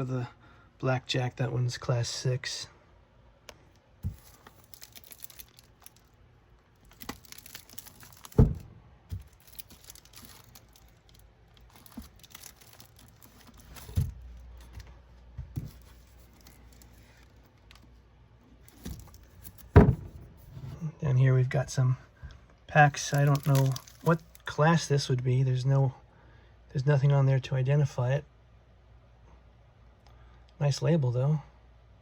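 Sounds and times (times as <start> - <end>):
paper wrappers crinkling: 4.0 - 14.9, 15.6 - 17.9, 18.6 - 19.8, 22.9 - 24.5
knocks on a shelf: 8.4 - 9.2, 19.8 - 20.6.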